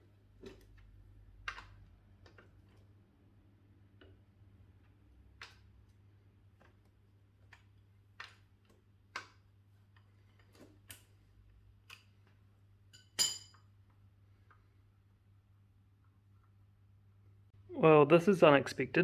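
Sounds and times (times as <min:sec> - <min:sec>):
metal clink ringing: 0:13.0 - 0:13.7.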